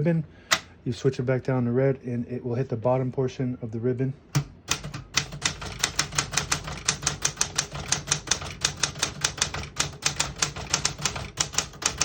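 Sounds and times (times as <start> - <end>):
manual typewriter typing: 4.4 - 12.0.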